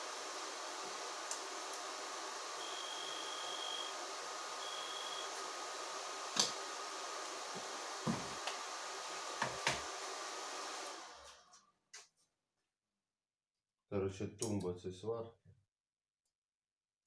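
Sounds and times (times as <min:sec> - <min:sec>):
cooling fan humming: 0:00.0 - 0:11.3
short high beep: 0:02.6 - 0:03.9.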